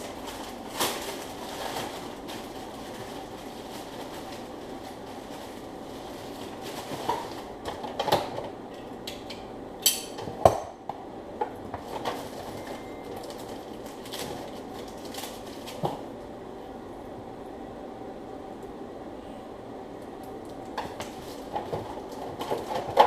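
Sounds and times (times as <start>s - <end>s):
steady room hum: 0.0s - 23.0s.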